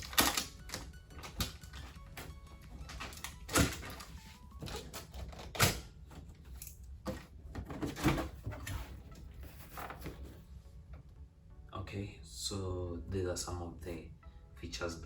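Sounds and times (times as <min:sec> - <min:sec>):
cardboard scraping and rustling: 0:07.1 - 0:10.6.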